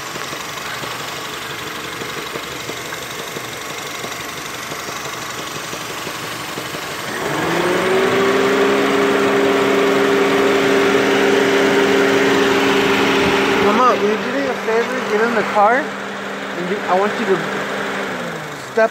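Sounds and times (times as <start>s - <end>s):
car engine idling: 0.0s - 18.9s
loud steady hum rising in pitch: 7.1s - 18.8s.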